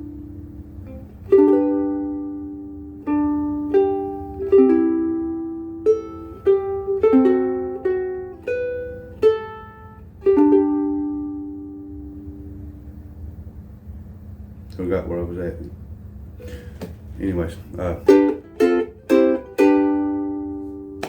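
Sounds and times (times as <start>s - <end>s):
ukulele chords and notes: 0.0s - 13.3s, 17.8s - 21.0s.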